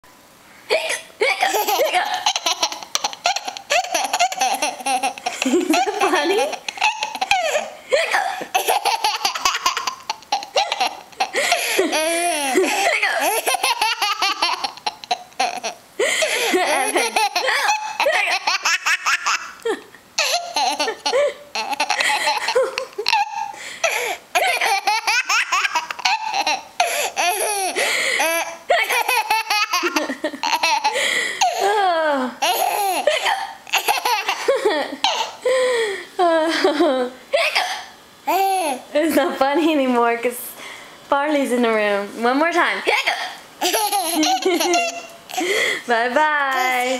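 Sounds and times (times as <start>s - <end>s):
child laughing hard: 0.7s - 35.5s, 43.6s - 45.7s.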